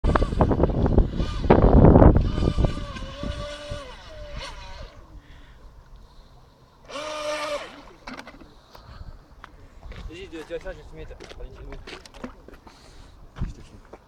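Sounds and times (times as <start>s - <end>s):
small electric motor whining: 0.0s - 5.2s, 6.8s - 8.5s
wind on microphone: 0.0s - 5.8s, 8.8s - 13.8s.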